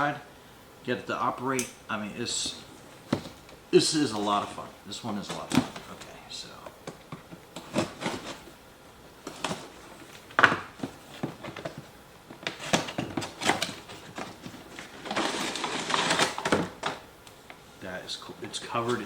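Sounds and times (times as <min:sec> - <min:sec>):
packaging rustling: 0:02.3 - 0:08.6, 0:09.2 - 0:17.0
packaging knocks and clicks: 0:09.2 - 0:17.0.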